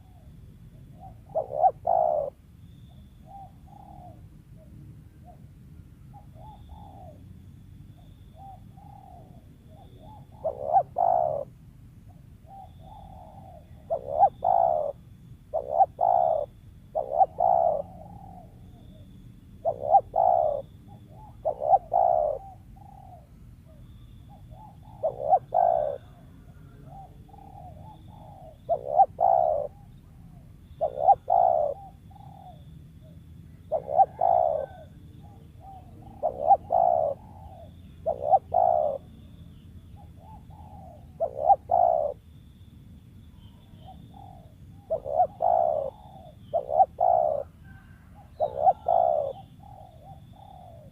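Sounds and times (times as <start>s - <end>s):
dove cooing: 0.0s - 42.3s, 43.3s - 50.9s.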